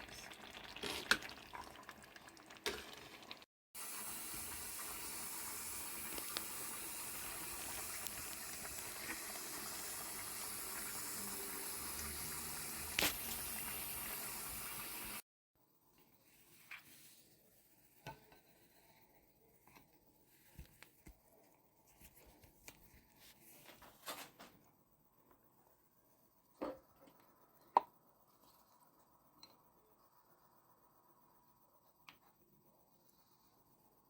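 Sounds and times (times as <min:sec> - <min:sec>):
steady watery hiss: 0:03.8 - 0:15.2.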